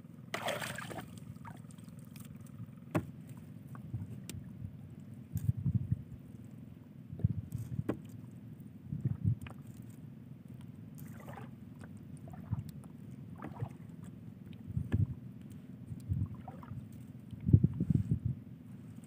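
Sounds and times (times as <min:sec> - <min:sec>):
low rumble of water and wind: 0:00.0 - 0:19.0
water splashes: 0:00.3 - 0:02.4, 0:11.0 - 0:14.1, 0:16.2 - 0:16.9
thumps and knocks on boat: 0:02.9 - 0:03.2, 0:07.2 - 0:08.2, 0:14.8 - 0:15.2.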